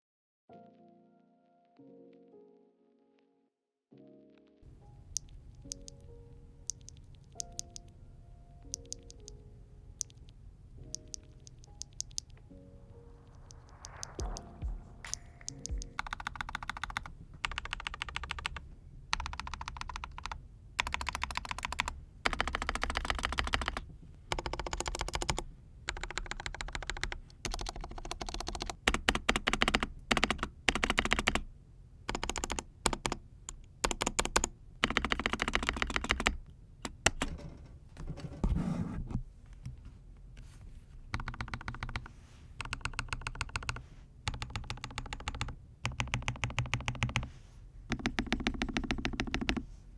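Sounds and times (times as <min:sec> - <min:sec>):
mechanical keyboard keys pressed: 0:05.1 - 0:06.1, 0:06.7 - 0:07.9, 0:08.7 - 0:09.4, 0:10.0 - 0:10.3, 0:10.9 - 0:12.4, 0:15.1 - 0:31.5, 0:32.1 - 0:37.4, 0:41.1 - 0:47.3, 0:47.9 - 0:49.6.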